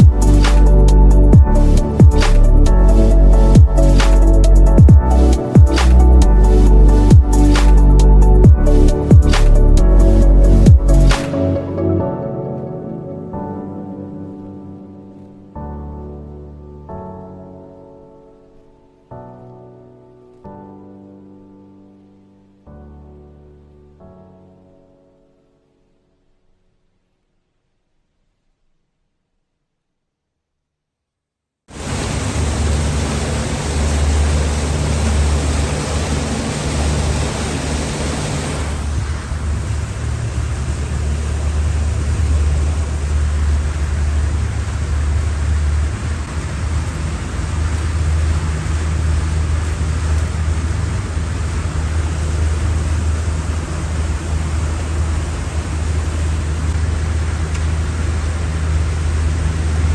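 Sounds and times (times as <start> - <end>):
constant rushing noise: 0.0 - 11.6, 31.7 - 59.9
boat engine humming: 0.0 - 12.0, 31.7 - 59.9.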